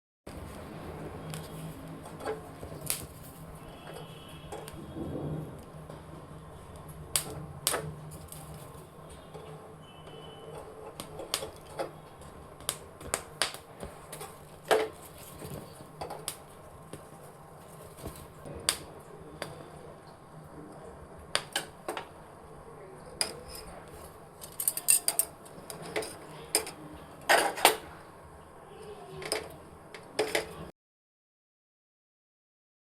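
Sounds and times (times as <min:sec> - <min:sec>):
kitchen utensils clinking: 0:01.4 - 0:04.8, 0:23.1 - 0:27.9, 0:29.2 - 0:30.7.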